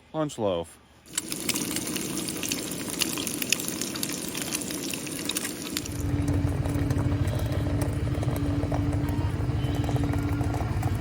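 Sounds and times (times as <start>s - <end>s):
meat sizzling in a pan: 1.1s - 5.9s.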